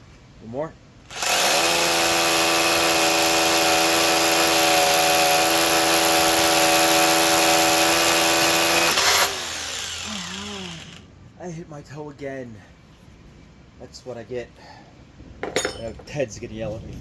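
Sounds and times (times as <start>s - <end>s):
rotary hammer drilling: 1.1s - 11.1s.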